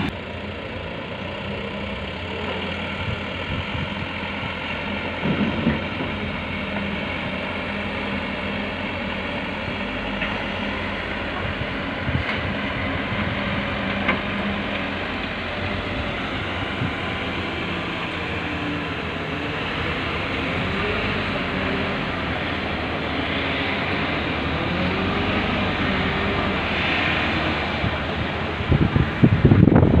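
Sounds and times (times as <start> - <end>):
diesel engine running: 0.0 - 30.0.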